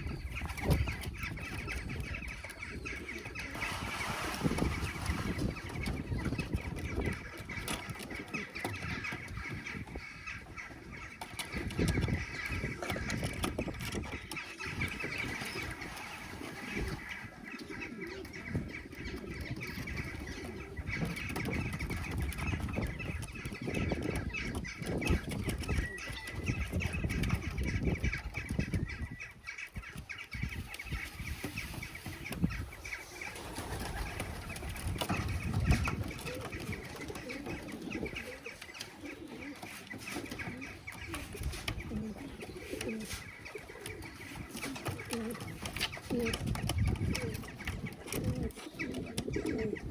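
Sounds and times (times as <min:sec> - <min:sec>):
pigeons shuffling about: 0:00.0 - 0:28.9, 0:29.9 - 0:49.9
bird calls: 0:00.0 - 0:49.9
pigeons flapping wings: 0:03.2 - 0:09.4, 0:11.3 - 0:17.5, 0:31.2 - 0:49.9.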